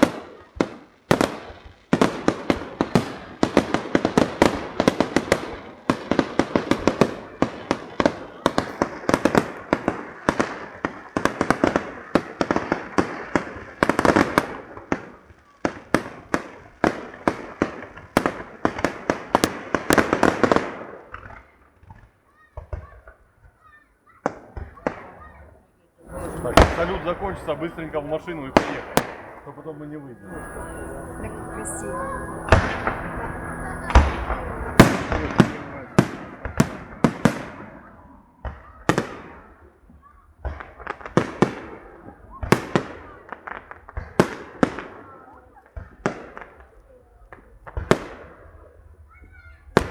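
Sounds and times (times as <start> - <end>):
fireworks bangs: 26.0 - 37.8.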